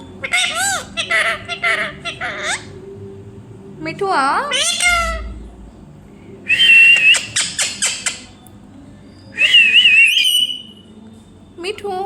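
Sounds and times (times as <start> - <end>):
parrot whistling: 4.5 - 5.5, 6.5 - 8.4, 9.3 - 10.8.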